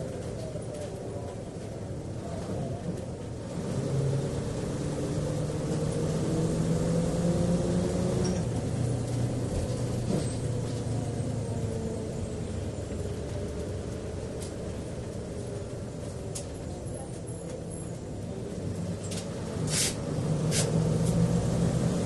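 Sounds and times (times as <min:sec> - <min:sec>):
bus engine hum: 0:00.0 - 0:22.0
cabin rumble: 0:08.1 - 0:22.0.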